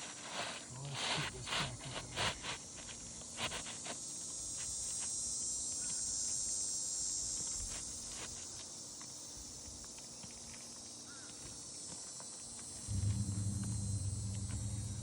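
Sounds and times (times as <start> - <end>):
high-pitched insect chorus: 0.8 - 15.0.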